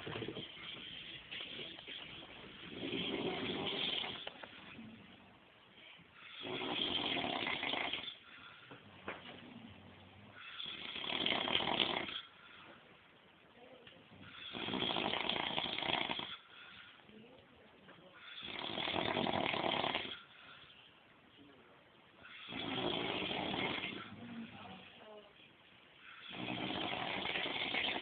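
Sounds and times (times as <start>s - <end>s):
quiet breathing: 0.0s - 28.0s
man snoring loudly: 2.7s - 4.2s, 6.4s - 8.2s, 10.4s - 12.3s, 14.4s - 16.4s, 18.4s - 20.2s, 22.4s - 24.1s, 26.2s - 28.0s.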